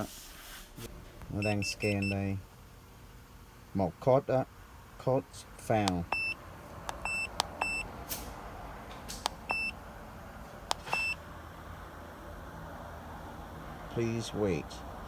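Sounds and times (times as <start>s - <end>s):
short high beeps: 1.4s - 2.2s, 10.8s - 11.2s
button clicks: 6.9s - 7.8s, 10.7s - 11.2s.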